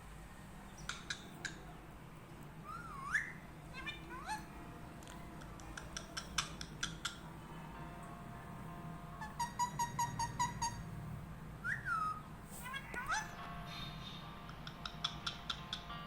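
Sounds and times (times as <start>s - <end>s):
parrot chirping and squawking: 0.8s - 1.6s, 2.6s - 4.5s, 5.8s - 7.2s, 9.2s - 10.9s, 11.6s - 15.9s.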